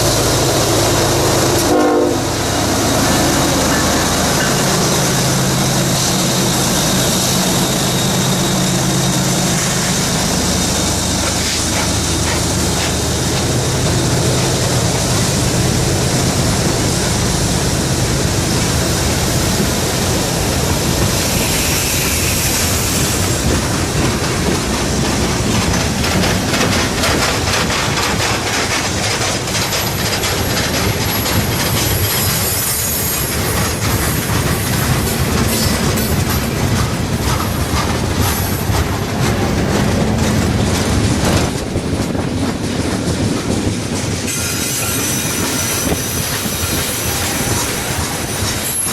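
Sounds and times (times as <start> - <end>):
diesel locomotive engines humming: 0.0 - 48.9
train cars rumbling past: 0.0 - 48.9
faint high wheel squeal: 6.0 - 9.4, 44.3 - 48.9
wheel clicks over rail joints: 23.4 - 32.4.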